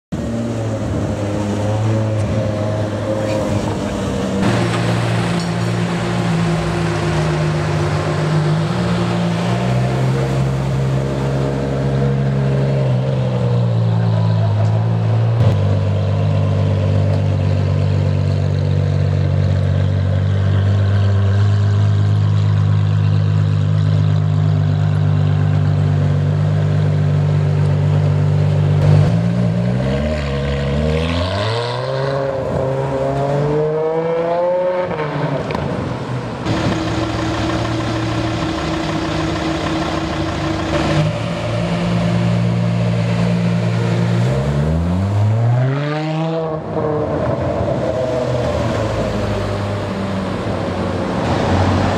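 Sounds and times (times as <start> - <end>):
car engine idling and revving: 0.1 - 51.9.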